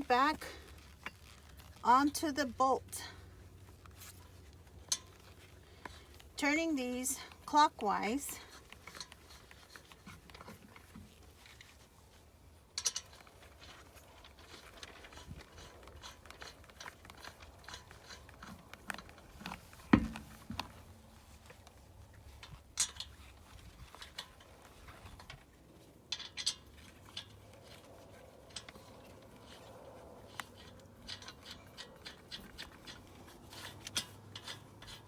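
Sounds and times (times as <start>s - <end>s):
lug nuts clicking and scraping: 0.0s - 6.6s, 7.2s - 35.0s.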